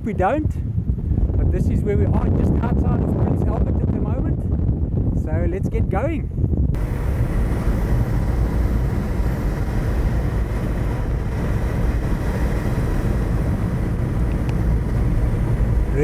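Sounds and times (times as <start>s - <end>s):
vehicle engine and road rumble: 6.2s - 16.0s.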